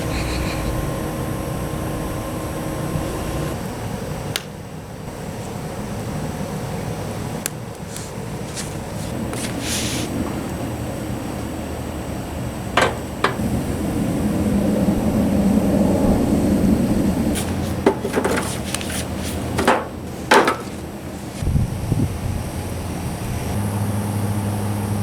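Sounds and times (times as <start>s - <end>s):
steady low rumble: 0.0s - 3.7s, 13.4s - 23.6s
sharp knocks: 12.8s - 13.4s, 19.6s - 20.9s.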